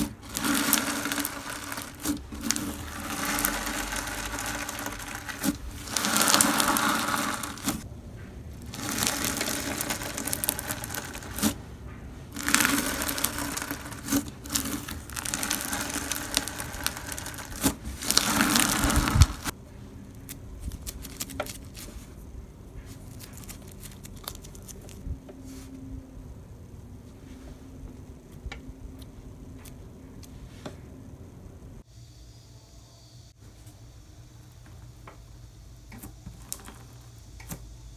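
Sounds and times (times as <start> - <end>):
slime squishing by hand: 0.0 - 7.8, 8.6 - 19.5.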